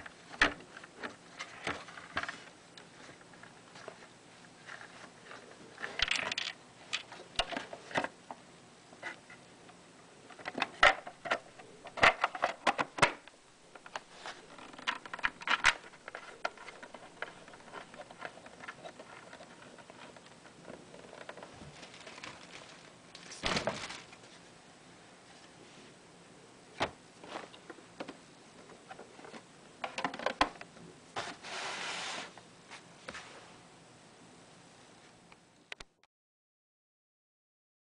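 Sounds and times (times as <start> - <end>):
plastic parts scraping: 13.8 - 24.4.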